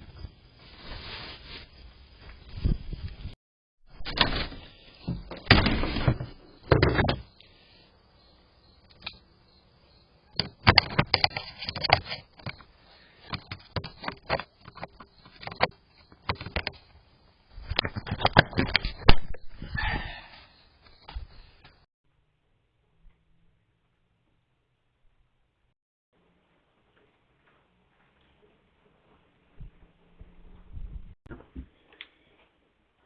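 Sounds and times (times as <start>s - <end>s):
rustling: 0.5s - 3.4s
clicks and knocks: 10.4s - 12.7s.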